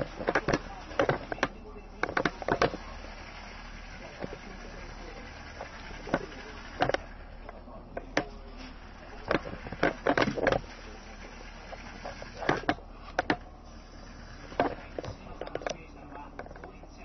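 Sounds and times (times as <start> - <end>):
toy car plastic clicks: 0.0 - 8.3, 9.1 - 13.4
low steady hum: 0.0 - 17.0.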